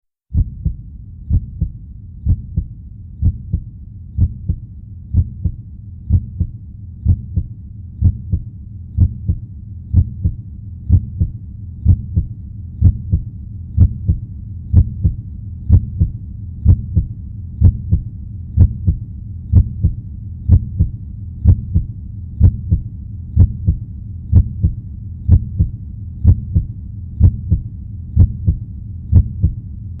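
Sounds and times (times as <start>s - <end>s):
faint low rumble: 0.3s - 30.0s
heartbeat thumps: 0.3s - 30.0s.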